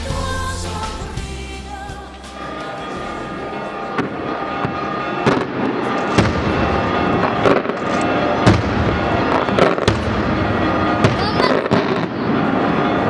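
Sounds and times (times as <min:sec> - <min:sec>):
fireworks crackle: 0:02.6 - 0:13.0
fireworks bangs: 0:03.4 - 0:13.0.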